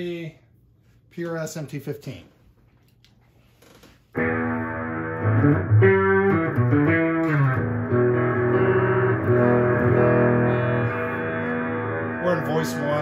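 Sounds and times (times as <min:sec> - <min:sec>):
clean electric guitar chords: 0:04.2 - 0:13.0.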